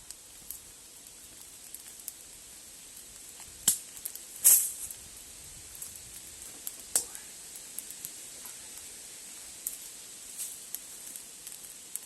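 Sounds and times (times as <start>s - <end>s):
campfire crackling: 0.0s - 12.0s
fire hissing: 0.0s - 12.0s
sharp fire pops: 3.0s - 8.9s.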